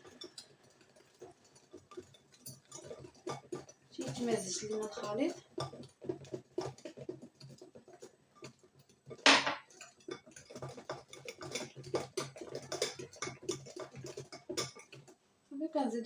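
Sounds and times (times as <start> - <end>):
utensil beating batter in bowl: 0.0 - 16.0.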